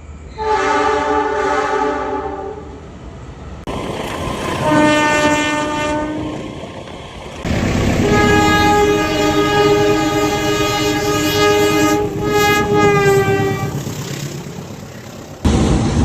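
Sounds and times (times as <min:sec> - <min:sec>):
train rumble: 0:00.0 - 0:16.0
locomotive air horn blast: 0:00.4 - 0:02.7, 0:04.6 - 0:06.4, 0:07.6 - 0:14.1.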